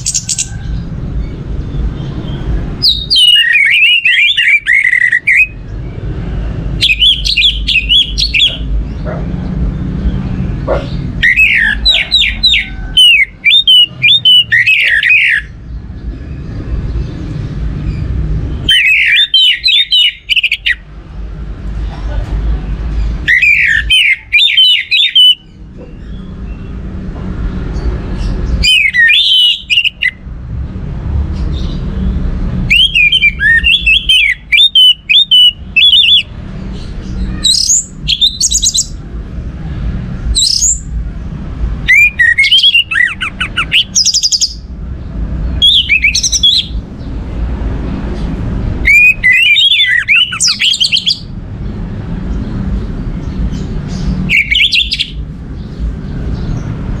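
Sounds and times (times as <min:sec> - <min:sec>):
thrush singing: 0:40.3 - 0:51.3.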